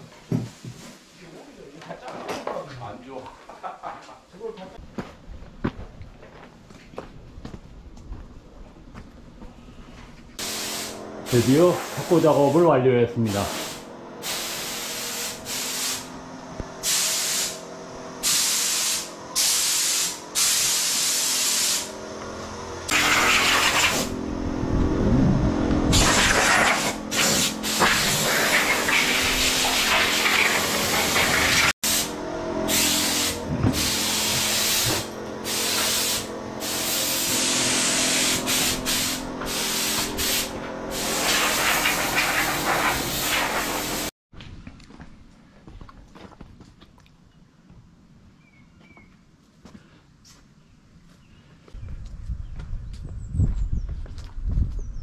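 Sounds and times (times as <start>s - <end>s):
machine hum: 10.3s - 44.1s
spraying hiss: 10.4s - 16.1s, 16.8s - 17.6s, 18.2s - 21.9s, 32.7s - 44.1s.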